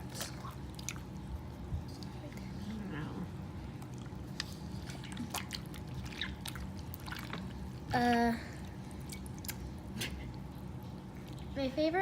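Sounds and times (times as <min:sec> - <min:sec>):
light wet trickle: 0:03.6 - 0:11.6.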